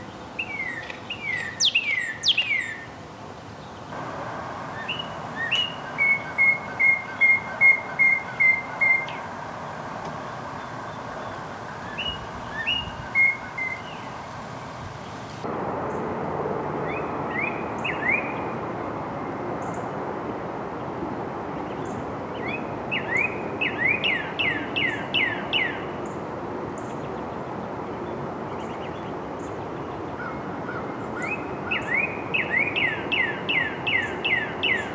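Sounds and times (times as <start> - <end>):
bird singing whistled notes: 0.0 - 2.9, 4.0 - 15.4
steady background noise: 0.0 - 34.9.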